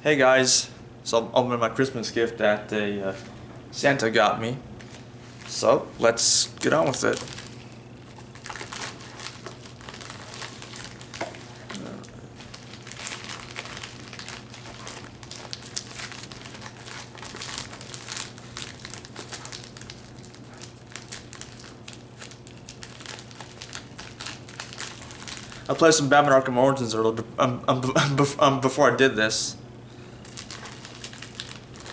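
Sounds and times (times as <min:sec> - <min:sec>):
paper crinkling and rustling: 0:04.8 - 0:26.0, 0:30.2 - 0:31.9.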